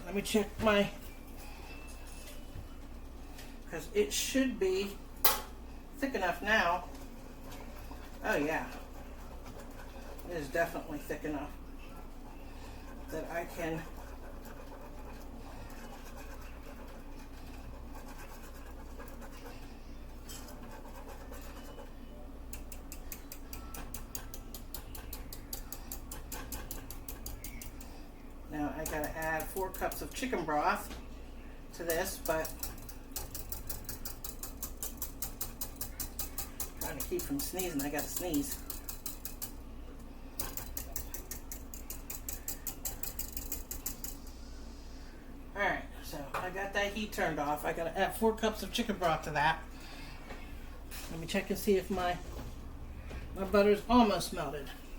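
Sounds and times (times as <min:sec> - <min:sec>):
utensil scraping a saucepan: 0:12.3 - 0:22.1, 0:31.8 - 0:39.5
low hum: 0:51.9 - 0:54.9.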